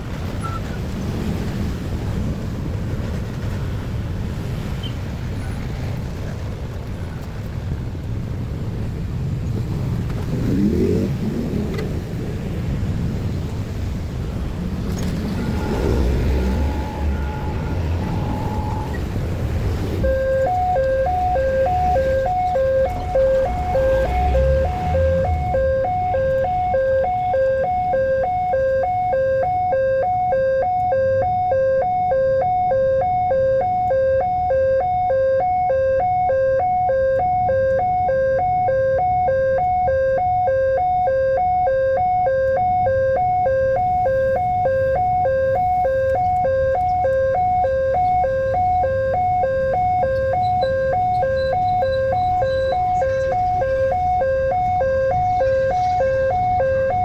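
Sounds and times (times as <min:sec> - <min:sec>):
low traffic rumble: 0:00.0 - 0:57.0
level crossing two-tone alarm: 0:15.3 - 0:57.0.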